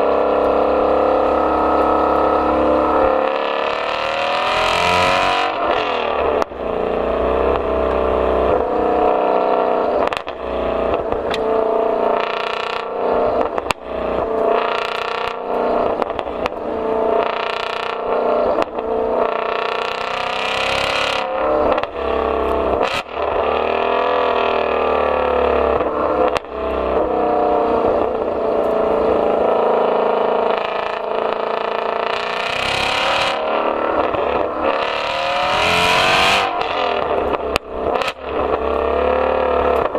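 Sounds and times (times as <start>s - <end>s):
car engine accelerating hard: 0.0s - 39.9s
exhaust cracks: 0.0s - 39.9s.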